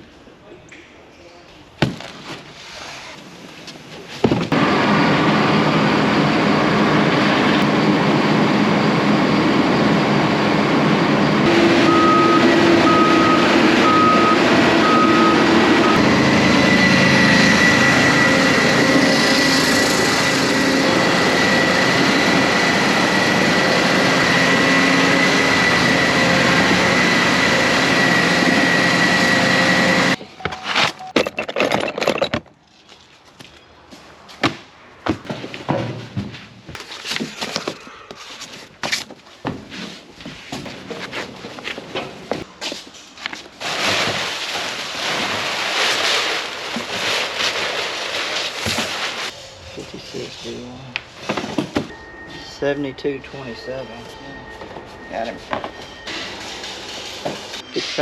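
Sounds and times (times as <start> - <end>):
large vehicle engine running: 4.5 - 30.2
electronic warning beeps: 11.4 - 21.8, 51.9 - 56.4.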